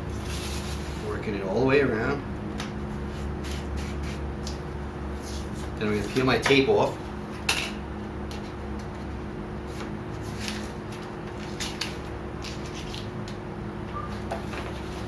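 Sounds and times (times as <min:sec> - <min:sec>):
steady low electrical hum: 0:00.0 - 0:15.0
tape peeling with crackles: 0:10.2 - 0:13.4.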